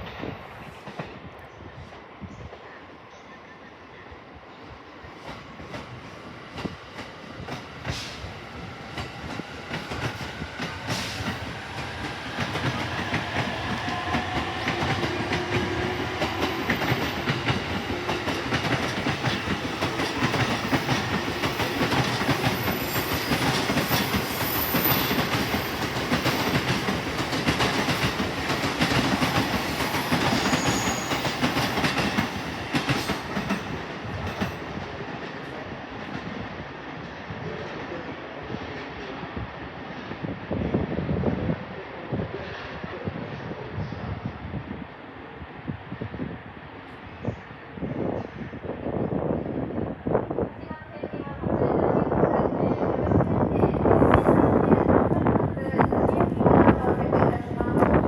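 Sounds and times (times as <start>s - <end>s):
train wheels clicking over rail joints: 8.9s - 36.3s.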